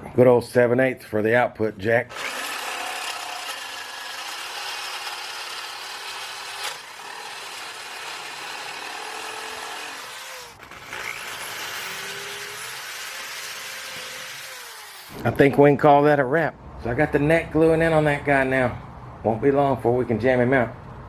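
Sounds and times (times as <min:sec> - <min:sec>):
power drill boring into wood: 0:02.1 - 0:15.2.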